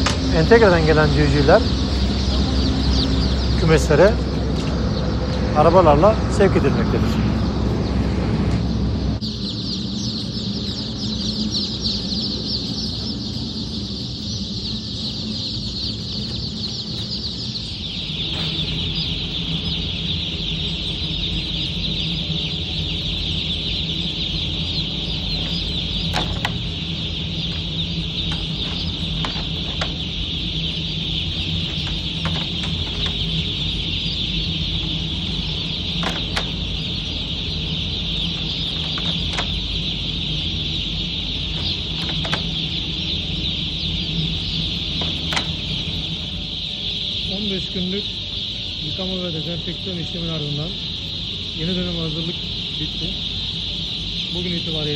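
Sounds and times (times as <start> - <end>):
low hum: 0.0 - 48.7
chicks peeping: 0.0 - 54.9
sharp knocks: 26.1 - 26.8, 31.6 - 33.4, 41.4 - 42.8, 44.9 - 46.1.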